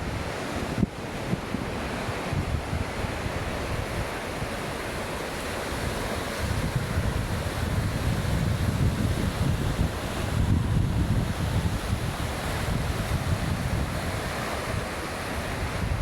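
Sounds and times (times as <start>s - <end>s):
waves washing onto beach: 0.0s - 16.0s
wind buffeting microphone: 0.0s - 16.0s.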